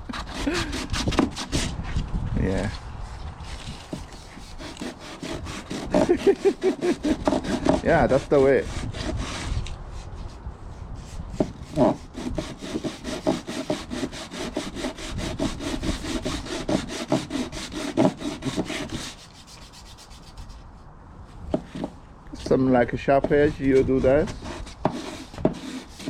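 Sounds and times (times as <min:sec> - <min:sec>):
wood being sanded by hand: 0:00.0 - 0:01.8, 0:03.4 - 0:10.3, 0:11.0 - 0:20.6, 0:23.2 - 0:26.0.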